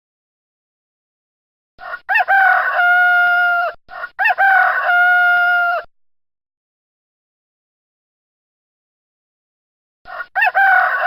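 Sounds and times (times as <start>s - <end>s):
rooster crowing: 1.8s - 5.9s, 10.1s - 11.0s.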